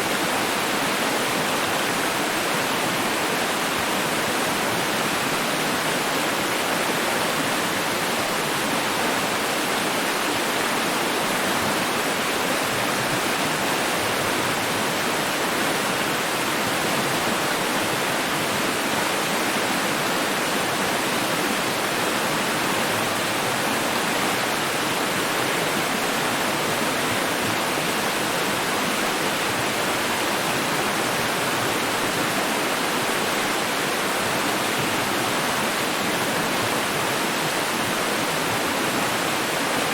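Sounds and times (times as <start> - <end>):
running water rushing: 0.0 - 39.9.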